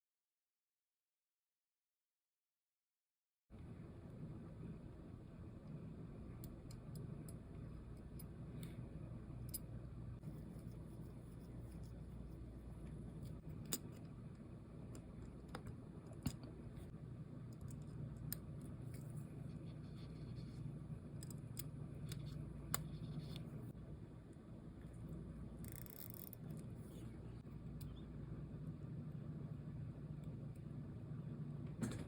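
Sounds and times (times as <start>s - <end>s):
low steady hum: 3.5s - 32.0s
small metal tools clicking: 25.6s - 26.5s.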